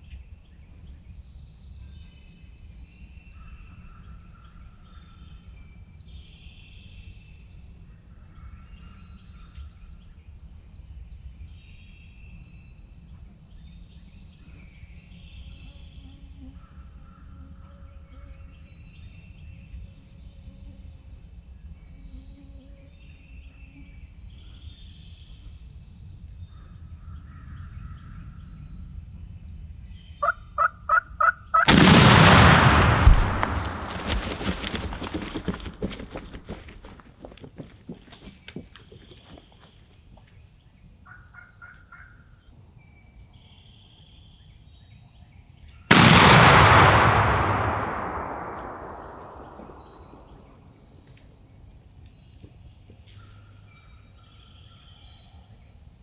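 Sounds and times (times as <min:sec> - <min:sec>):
songbirds singing: 0:00.0 - 0:50.6, 0:51.4 - 0:56.0
turkey gobbling: 0:30.2 - 0:31.7
loud shotgun blast echoing: 0:31.7 - 0:36.9, 0:45.9 - 0:50.5.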